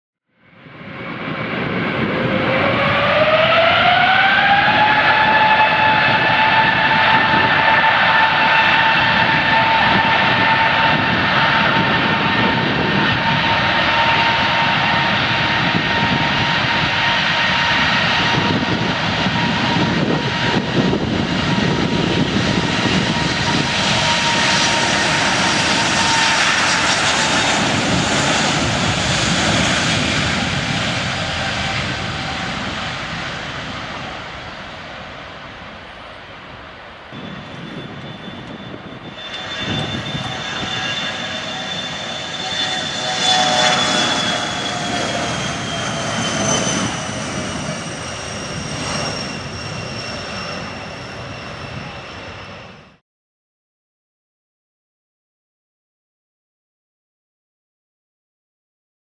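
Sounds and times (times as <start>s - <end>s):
jet turbine whine: 0.4s - 53.0s
jet engine roar: 0.5s - 53.0s.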